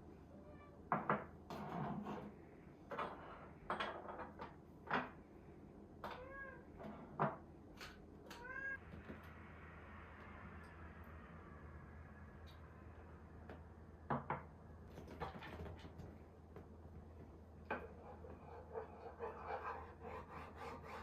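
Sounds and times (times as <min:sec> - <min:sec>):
cat meowing: 0:06.0 - 0:06.8, 0:08.3 - 0:08.8.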